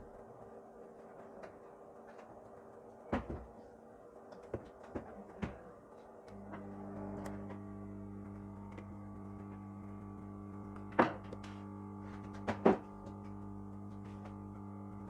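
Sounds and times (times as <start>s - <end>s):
hot air station humming: 6.1s - 15.0s.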